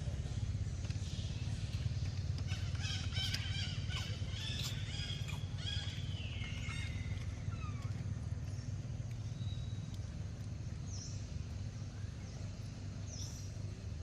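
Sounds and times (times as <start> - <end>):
steady low rumble: 0.0 - 14.0
high-pitched animal chirps: 3.2 - 6.0.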